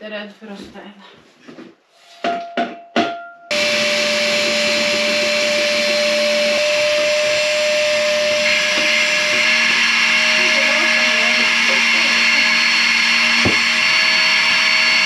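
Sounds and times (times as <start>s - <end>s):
vacuum cleaner whining: 3.5s - 15.0s.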